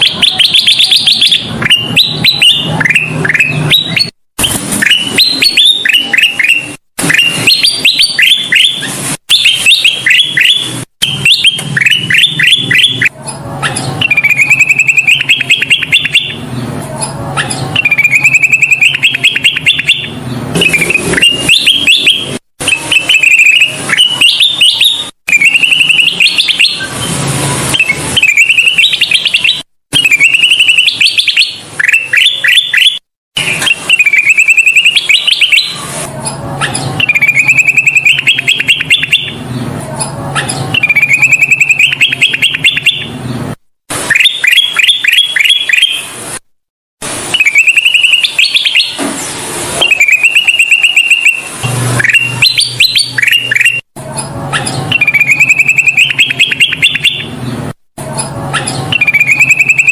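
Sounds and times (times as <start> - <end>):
bulbul singing trilled notes: 4.8 - 16.4, 17.0 - 27.1, 27.8 - 35.8, 36.6 - 39.4, 40.4 - 43.1, 54.6 - 57.3, 58.6 - 59.9.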